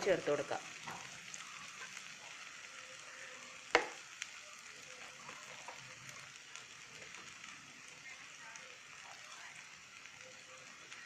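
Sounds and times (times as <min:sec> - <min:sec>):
food sizzling in a frying pan: 0:00.0 - 0:11.0
sharp knock against pan: 0:03.7 - 0:04.0.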